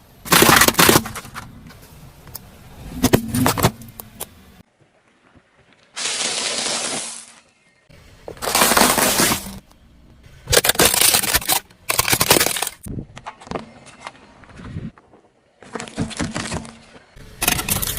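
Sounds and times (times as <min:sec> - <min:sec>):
objects being crushed: 0:00.2 - 0:01.8, 0:08.3 - 0:09.7, 0:10.5 - 0:13.4.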